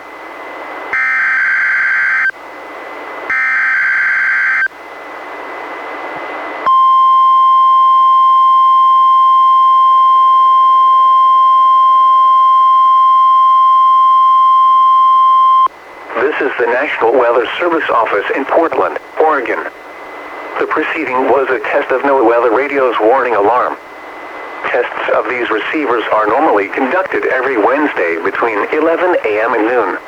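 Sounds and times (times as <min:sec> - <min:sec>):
steady warning alarm tone: 0:00.1 - 0:02.4, 0:03.2 - 0:04.8, 0:06.7 - 0:15.7
radio hiss: 0:16.0 - 0:30.0.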